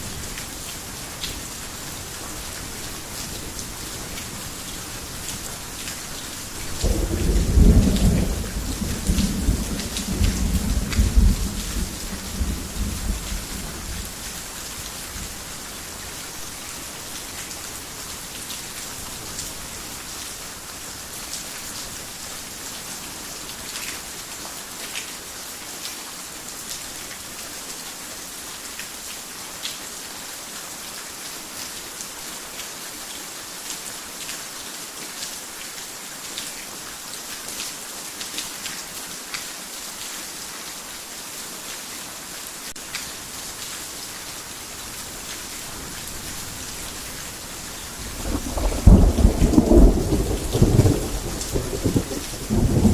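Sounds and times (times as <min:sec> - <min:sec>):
heavy rain on a roof: 0:00.0 - 0:52.9
thunder rumbling: 0:48.1 - 0:52.9.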